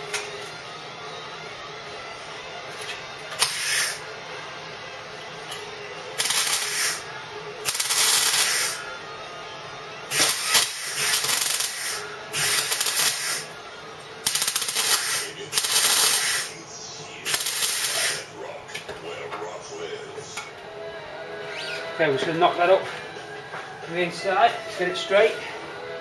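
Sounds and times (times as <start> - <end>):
welder arc hissing: 3.4 - 4.0, 6.2 - 8.8, 10.1 - 13.6, 14.2 - 18.3.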